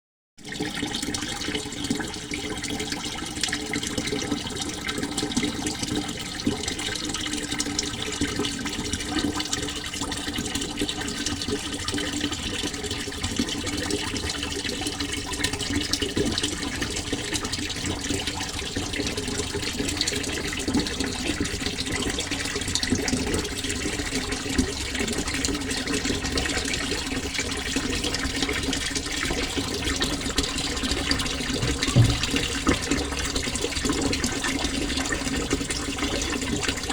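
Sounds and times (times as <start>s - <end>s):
water flowing and splashing: 26.8s - 36.9s.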